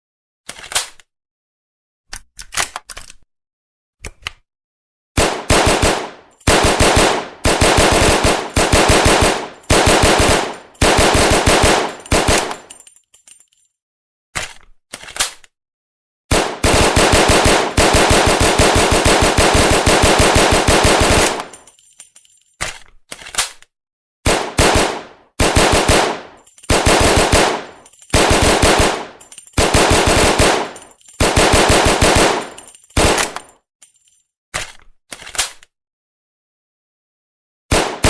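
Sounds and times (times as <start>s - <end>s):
submachine gun bursts: 5.4s - 12.6s, 16.6s - 21.5s, 25.4s - 29.0s, 29.6s - 33.4s.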